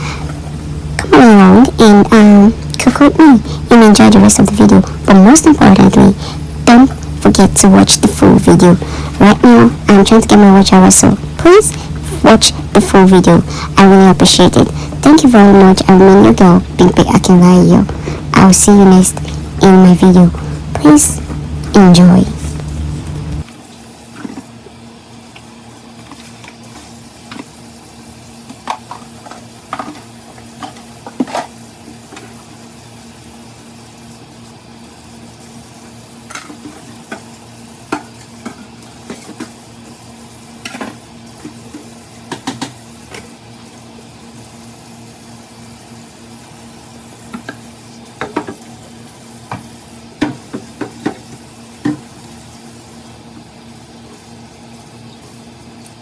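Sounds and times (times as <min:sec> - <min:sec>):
steady hum: 0:00.0 - 0:56.0.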